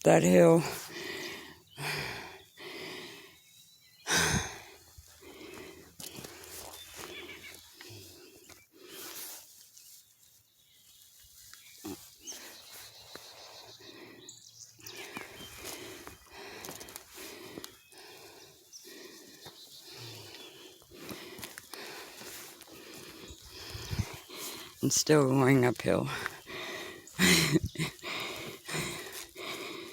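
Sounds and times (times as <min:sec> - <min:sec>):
person breathing hard: 0:00.6 - 0:09.5, 0:12.2 - 0:24.8, 0:26.1 - 0:29.9
footsteps and scuffs: 0:05.2 - 0:10.1, 0:20.9 - 0:24.8.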